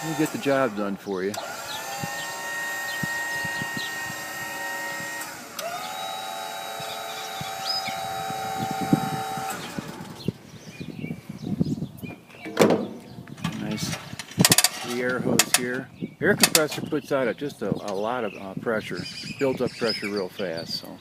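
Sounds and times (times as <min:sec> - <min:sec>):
crane motor whine: 0:00.0 - 0:10.4.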